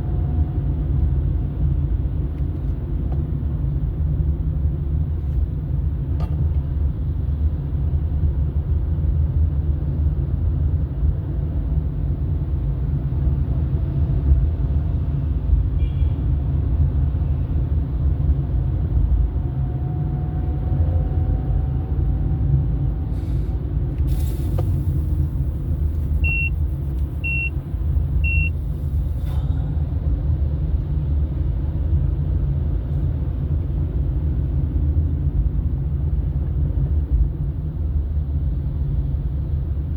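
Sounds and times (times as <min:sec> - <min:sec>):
car engine and road noise: 0:00.0 - 0:39.9.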